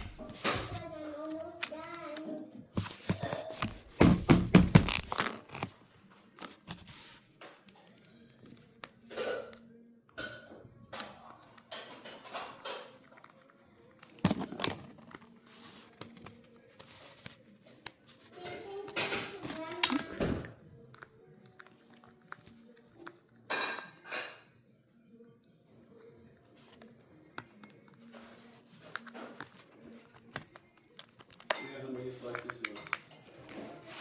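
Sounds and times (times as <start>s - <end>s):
small objects clicking and rustling: 10.9s - 23.7s, 26.6s - 34.0s.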